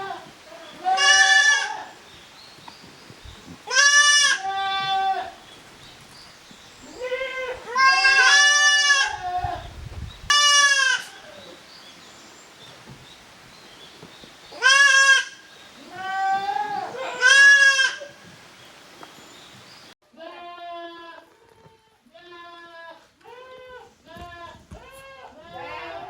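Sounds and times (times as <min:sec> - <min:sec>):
goat kids bleating: 0:00.0 - 0:02.0, 0:03.5 - 0:05.5, 0:06.8 - 0:09.6, 0:10.3 - 0:11.4, 0:14.5 - 0:18.2, 0:20.1 - 0:26.0.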